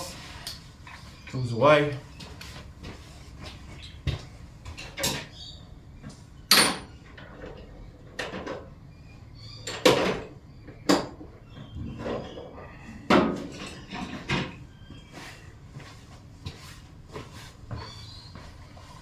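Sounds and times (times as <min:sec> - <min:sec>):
metallic knocks and clanks: 0:06.5 - 0:07.3.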